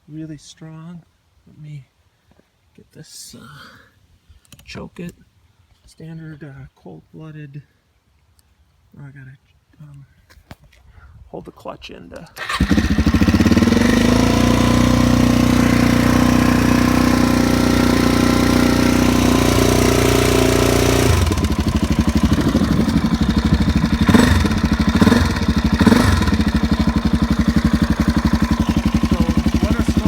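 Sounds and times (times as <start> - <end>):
engine throttle blips: 12.4 - 30.0
motorcycle engine idling: 12.5 - 30.0.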